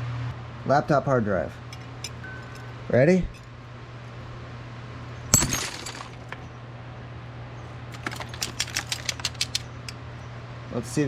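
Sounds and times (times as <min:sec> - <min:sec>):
breaking glass tinkle: 0:05.4 - 0:06.4
small clicks: 0:07.9 - 0:10.0.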